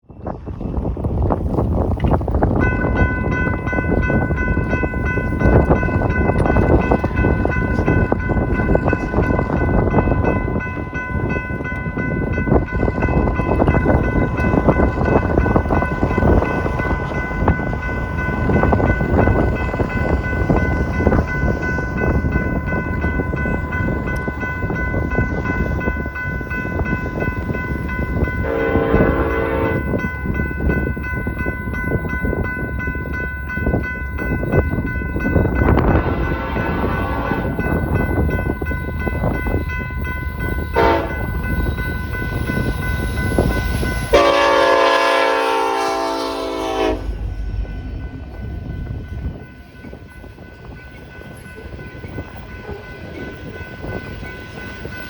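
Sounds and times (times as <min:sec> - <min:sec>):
train rolling past: 0:00.0 - 0:55.0
wind rumble on microphone: 0:00.0 - 0:55.0
train horn blast: 0:28.4 - 0:29.9, 0:35.9 - 0:37.6, 0:40.8 - 0:41.3, 0:44.1 - 0:47.3.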